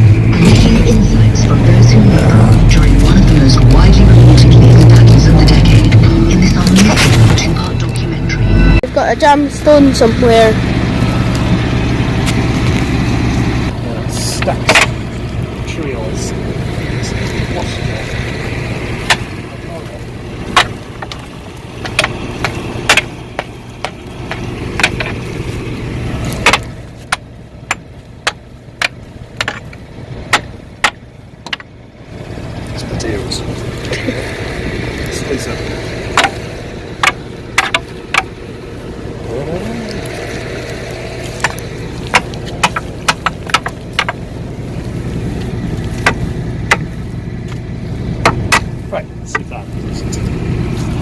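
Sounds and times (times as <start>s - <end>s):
low engine hum: 0.0s - 51.0s
sharp clicks and knocks: 14.4s - 15.1s, 19.0s - 19.4s, 20.5s - 25.3s, 26.2s - 31.8s, 36.1s - 38.4s, 39.9s - 44.4s, 45.4s - 47.6s, 48.2s - 50.4s.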